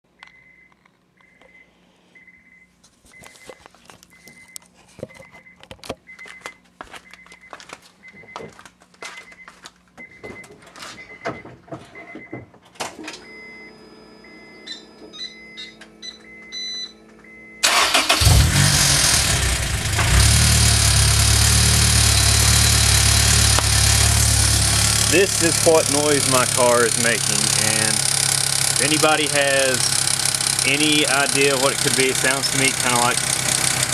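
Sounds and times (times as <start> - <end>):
car engine cranking and idling: 17.6 - 33.9
car warning chime beeping: 22.1 - 33.9.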